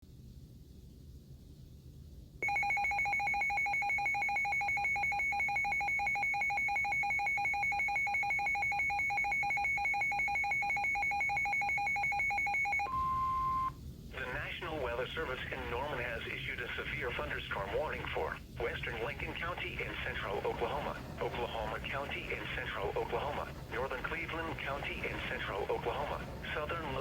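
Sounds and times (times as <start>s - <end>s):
pulsing two-pitch alarm beep: 2.4s - 13.7s
steady single alarm tone: 2.4s - 13.7s.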